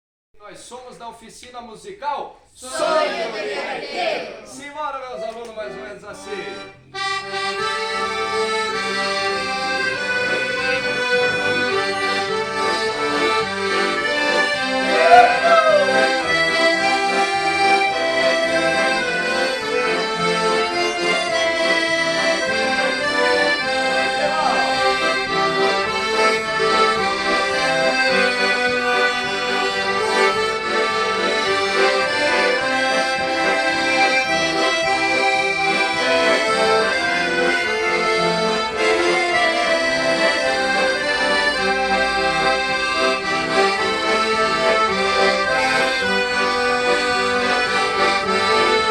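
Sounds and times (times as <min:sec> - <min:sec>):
accordions playing together: 0:02.7 - 0:48.9
person whooping: 0:14.9 - 0:16.3, 0:24.2 - 0:24.8.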